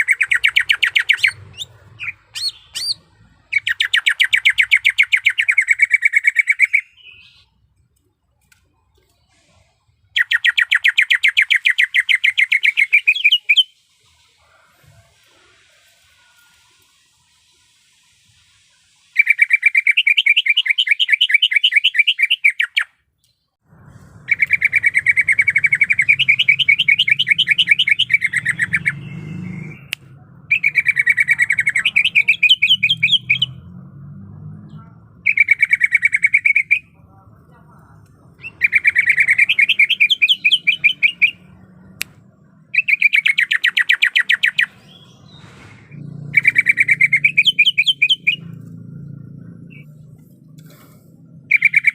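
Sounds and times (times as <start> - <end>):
bird singing trilled phrases: 0.0 - 7.7, 9.2 - 14.2, 19.0 - 23.5, 24.2 - 29.9, 30.5 - 33.7, 34.7 - 37.0, 38.1 - 42.0, 42.7 - 45.5, 46.2 - 50.2, 51.5 - 51.9.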